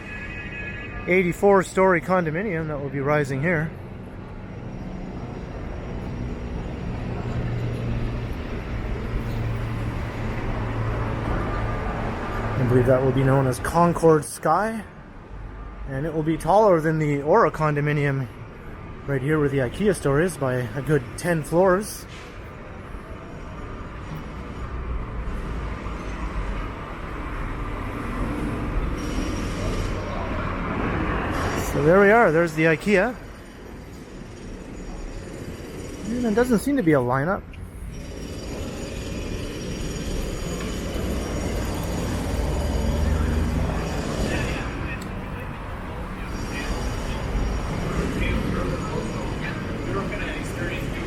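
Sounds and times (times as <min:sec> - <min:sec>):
street traffic noise: 0:00.0 - 0:51.0
vehicle engine hum: 0:22.1 - 0:51.0.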